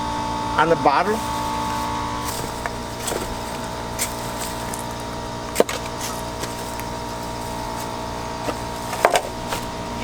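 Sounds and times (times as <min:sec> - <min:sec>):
steady background hum: 0:00.0 - 0:10.0
shovel knocks: 0:02.3 - 0:09.8.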